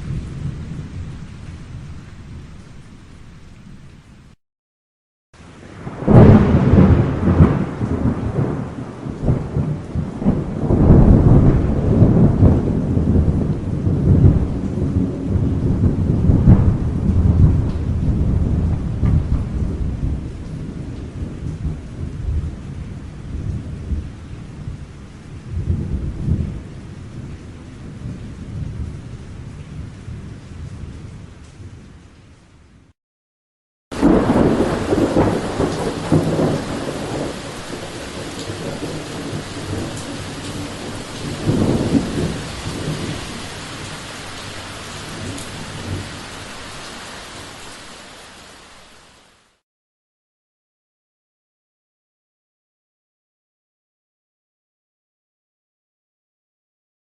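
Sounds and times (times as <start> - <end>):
thunder clap and rumble: 0.0 - 2.5, 5.7 - 32.1, 33.9 - 46.4
steady rain: 0.0 - 4.4, 5.4 - 33.0, 33.9 - 49.6.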